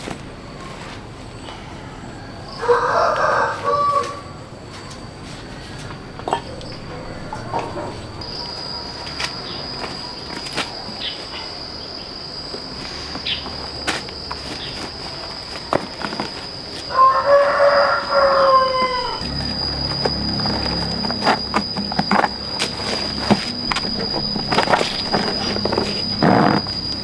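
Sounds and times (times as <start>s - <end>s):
rooster crowing: 2.1s - 4.9s, 16.8s - 27.0s
steady high-pitched whine: 3.6s - 27.0s.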